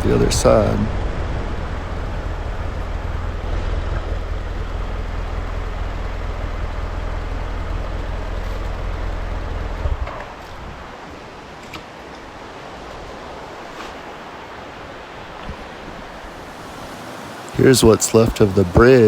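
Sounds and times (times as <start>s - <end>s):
vehicle engine rumbling: 0.0s - 11.4s, 16.0s - 19.0s.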